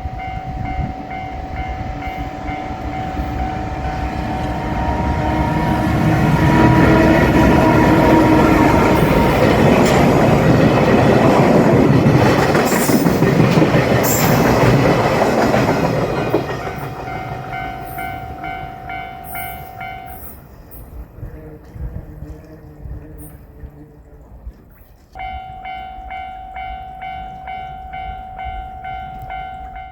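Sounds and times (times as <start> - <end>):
train wheels clattering: 2.0 - 20.6
level crossing bell ringing: 16.7 - 20.4, 25.2 - 29.9.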